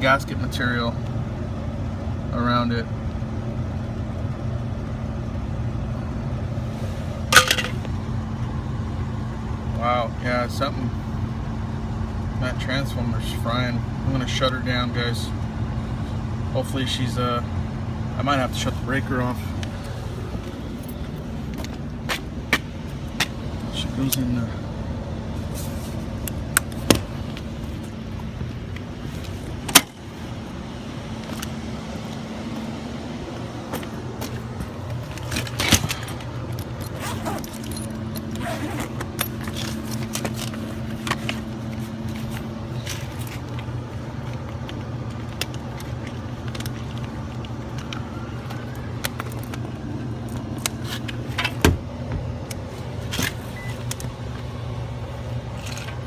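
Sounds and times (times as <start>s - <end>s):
hvac unit humming: 0.0s - 56.0s
tools or keys jangling: 35.2s - 40.4s.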